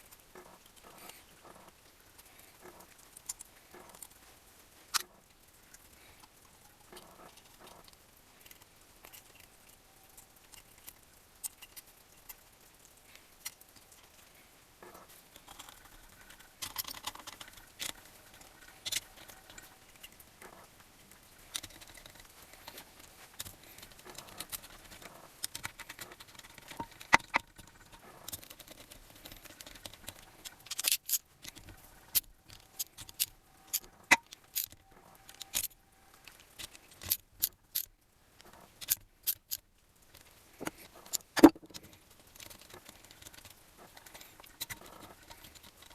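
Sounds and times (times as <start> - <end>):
metal parts clinking: 28.3 - 35.8, 36.6 - 37.9.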